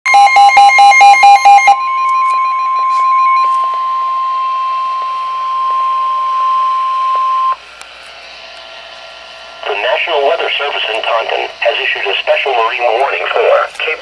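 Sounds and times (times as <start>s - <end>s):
rapid two-pitch electronic beeps: 0.1s - 7.6s
radio hiss: 9.6s - 14.0s.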